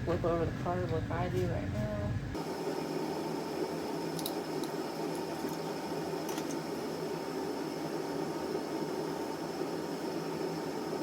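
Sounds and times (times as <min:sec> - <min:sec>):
steady hum and hiss: 0:00.0 - 0:11.0
faint high whine: 0:02.4 - 0:11.0.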